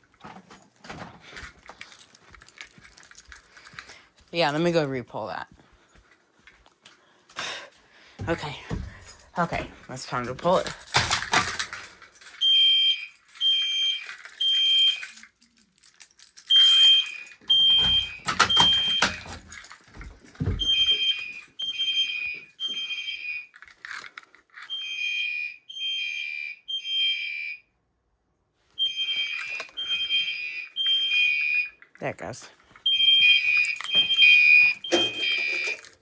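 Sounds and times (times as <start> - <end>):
fire alarm horn blasts: 12.4 - 15.0, 16.5 - 19.5, 20.6 - 23.4, 24.7 - 27.6, 28.8 - 31.7, 32.8 - 35.8.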